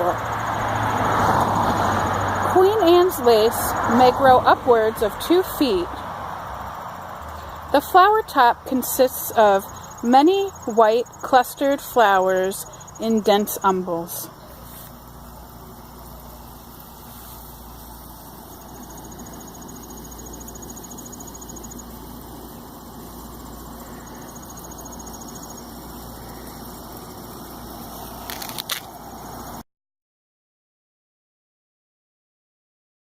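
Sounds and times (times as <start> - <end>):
high pulsing insect-like trills: 0.0 - 29.6
low outdoor rumble: 0.0 - 29.6.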